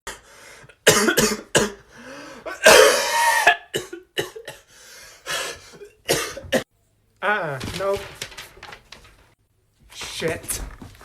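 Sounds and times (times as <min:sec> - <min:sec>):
person coughing: 0:00.8 - 0:01.9, 0:02.5 - 0:04.7, 0:05.3 - 0:06.6.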